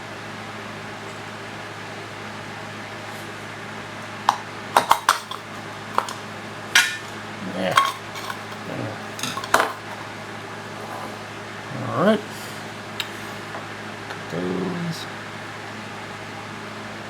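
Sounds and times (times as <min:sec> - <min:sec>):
steady low hum: 0:02.6 - 0:15.2
metal tools clinking: 0:04.3 - 0:11.3.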